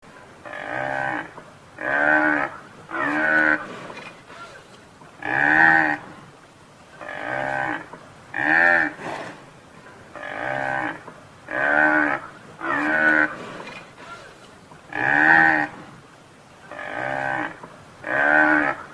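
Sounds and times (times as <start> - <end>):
buffalo calling: 0.4 - 6.1, 6.9 - 9.2, 10.1 - 15.8, 16.6 - 18.9.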